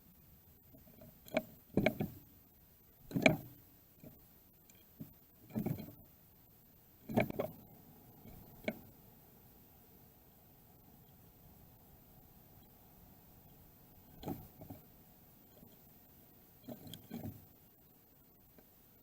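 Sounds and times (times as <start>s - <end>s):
birds pecking at feeder bowl: 0.7s - 2.3s, 3.0s - 6.2s, 6.9s - 9.4s, 10.9s - 17.6s.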